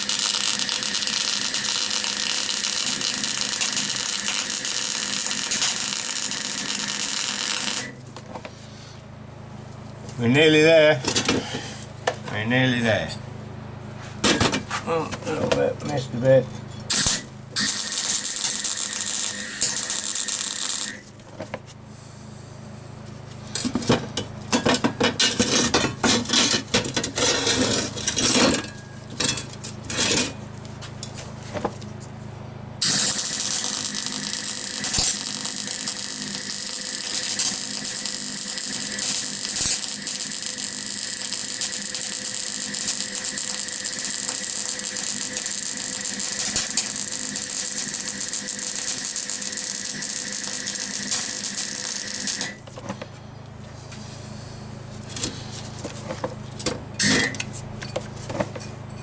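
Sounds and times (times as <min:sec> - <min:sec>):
welding arc crackling: 0:00.0 - 0:08.0, 0:16.9 - 0:21.1, 0:32.8 - 0:52.6.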